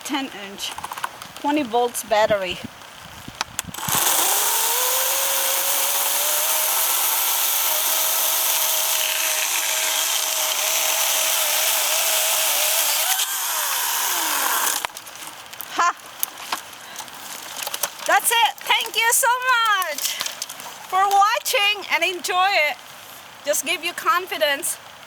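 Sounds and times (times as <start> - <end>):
electric chainsaw whining: 3.7 - 15.0.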